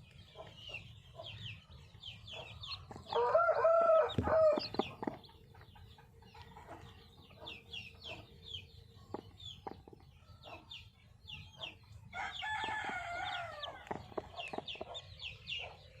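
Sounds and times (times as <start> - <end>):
chicks cheeping: 0.0 - 16.0
rooster crowing: 3.1 - 4.7, 12.2 - 13.9.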